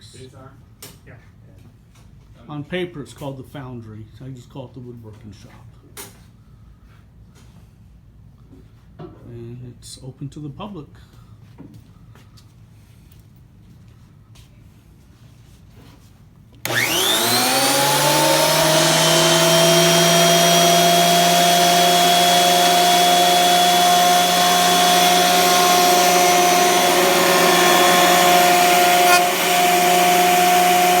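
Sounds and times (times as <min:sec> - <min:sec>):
electric wood planer whining: 0:16.6 - 0:31.0.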